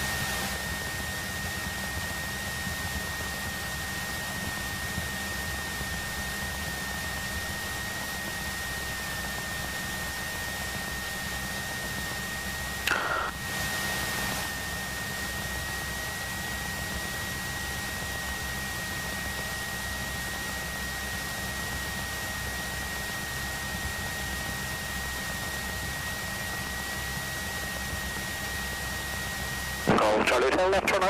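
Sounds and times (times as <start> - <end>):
high whine: 12.8 - 14.5
intercom hiss: 12.9 - 13.4, 29.9 - 31.0.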